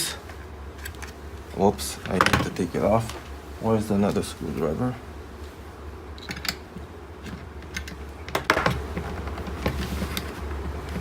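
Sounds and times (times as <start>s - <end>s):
steady low hum: 0.0s - 11.0s
hand tools clicking and knocking: 7.2s - 10.3s.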